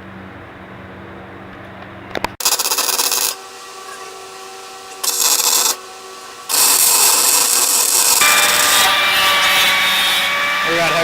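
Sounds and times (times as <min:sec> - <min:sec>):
steady hum: 0:00.0 - 0:11.0
crackling welding arc: 0:02.4 - 0:09.0.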